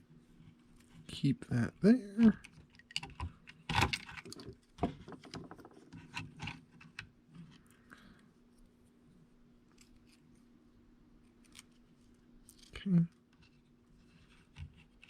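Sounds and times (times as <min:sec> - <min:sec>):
faint steady hum: 0:00.0 - 0:15.0
plastic parts clicking and tapping: 0:02.4 - 0:07.1.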